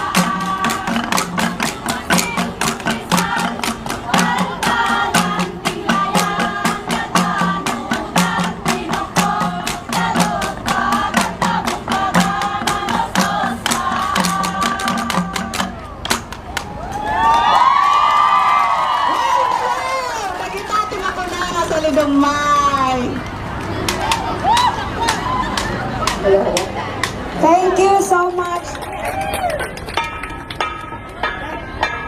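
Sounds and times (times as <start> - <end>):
flat gongs beaten in rhythm: 0.0 - 16.3.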